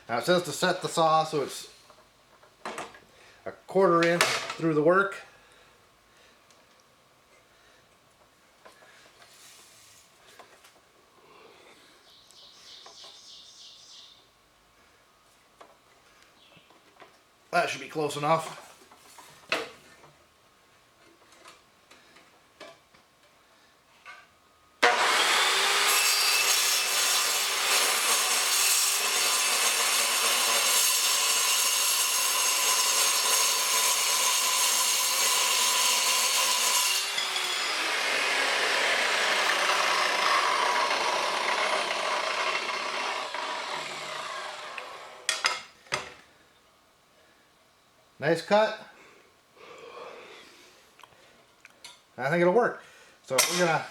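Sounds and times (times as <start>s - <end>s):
circular saw cutting steel: 24.8s - 45.3s.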